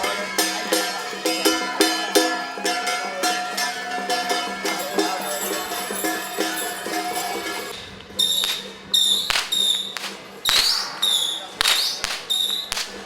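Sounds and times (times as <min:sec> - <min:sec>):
held steady tones: 0:00.0 - 0:07.8
music with percussion: 0:00.0 - 0:07.8.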